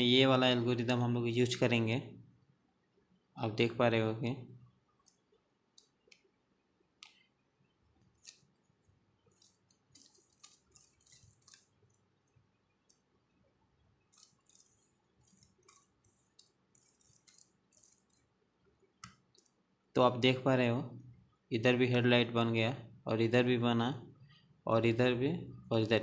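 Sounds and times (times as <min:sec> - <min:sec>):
puzzle cube layers clicking: 0:09.3 - 0:12.0, 0:14.1 - 0:18.3.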